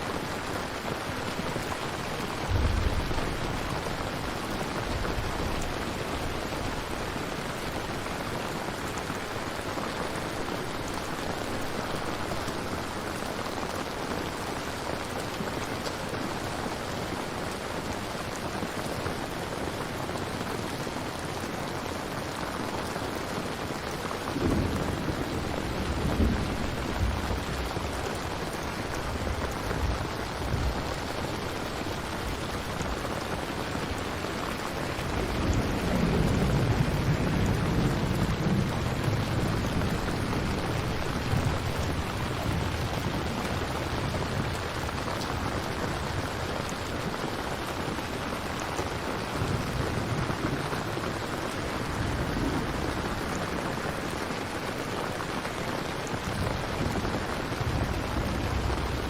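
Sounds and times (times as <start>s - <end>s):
heavy rain: 0.0s - 59.0s
thunder rumbling: 1.5s - 8.3s, 24.2s - 46.9s, 48.8s - 54.1s, 56.1s - 59.0s.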